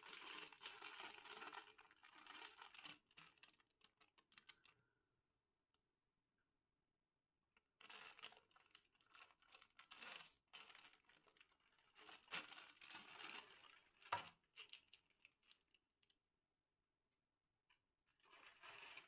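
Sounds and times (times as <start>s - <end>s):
plastic snack packet crinkling: 0.0s - 4.8s, 7.8s - 15.8s.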